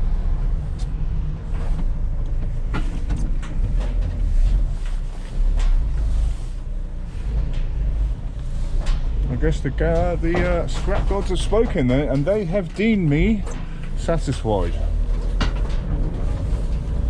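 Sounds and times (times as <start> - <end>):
van engine and road rumble: 0.0 - 17.0
knocks and rattles: 1.6 - 4.8, 7.3 - 17.0.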